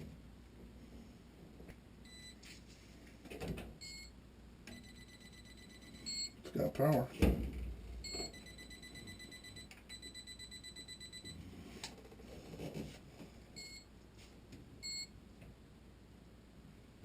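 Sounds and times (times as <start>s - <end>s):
electrical tester beeping: 2.1s - 2.4s, 3.8s - 6.4s, 8.0s - 11.4s, 13.6s - 13.8s, 14.8s - 15.1s.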